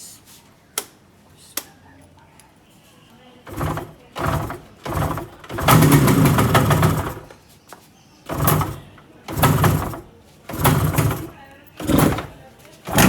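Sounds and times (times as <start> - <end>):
two-stroke motorcycle engine revving: 3.5 - 7.3, 8.3 - 13.0.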